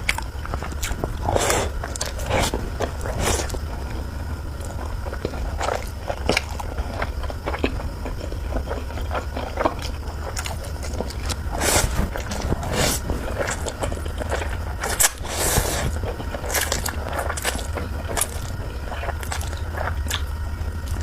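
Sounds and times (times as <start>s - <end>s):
low hum: 0.0s - 21.0s
wet chewing: 0.0s - 21.0s
noodle slurping: 0.6s - 4.0s, 10.2s - 21.0s.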